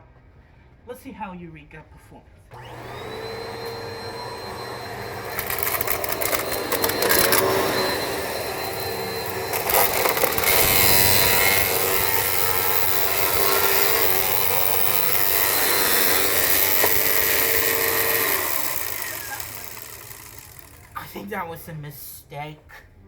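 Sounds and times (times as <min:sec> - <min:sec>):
upright vacuum cleaner running: 0:02.5 - 0:21.1
brush roll scraping and grinding: 0:03.9 - 0:20.7.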